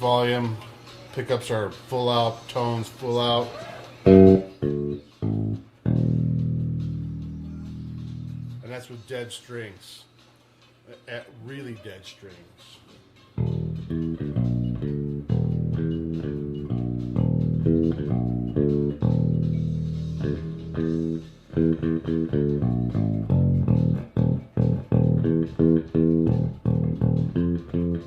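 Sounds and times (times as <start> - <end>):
electric bass guitar notes: 4.0 - 8.6, 13.4 - 28.0.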